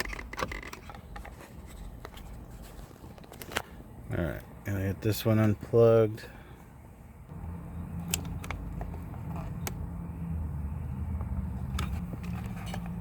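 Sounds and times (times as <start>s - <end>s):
steady low rumble: 6.7s - 13.0s.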